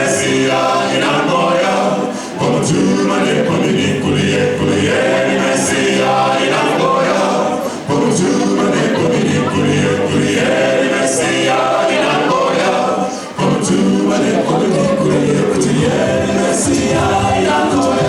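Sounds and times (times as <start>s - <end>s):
men singing a cappella harmony: 0.0s - 18.0s.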